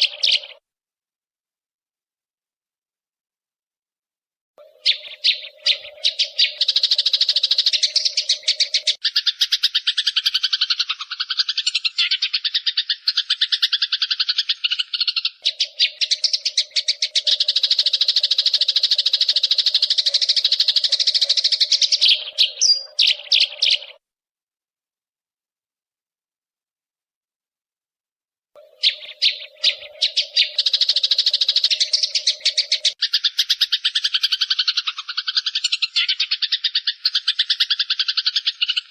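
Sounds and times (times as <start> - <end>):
sparrow chattering: 0.0 - 0.6, 4.6 - 24.0, 28.6 - 38.9.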